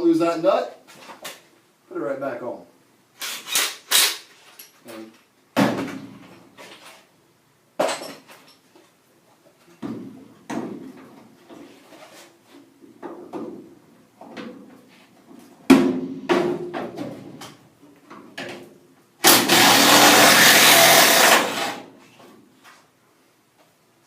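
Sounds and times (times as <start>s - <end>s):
impact drill hammering: 19.2s - 21.8s.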